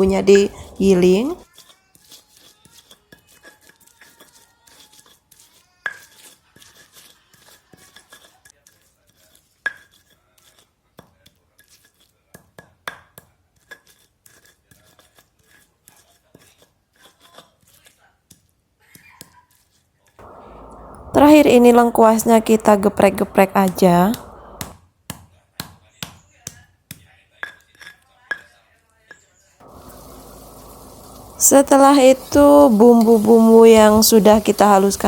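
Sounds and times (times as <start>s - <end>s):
manual grinder grinding spice paste: 1.4s - 18.0s.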